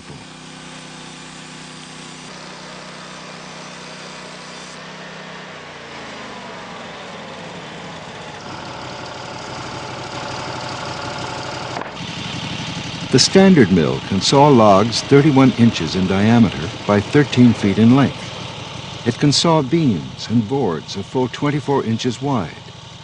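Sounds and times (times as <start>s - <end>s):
sawmill engine running: 0.0s - 23.0s
steady tone: 8.5s - 22.8s.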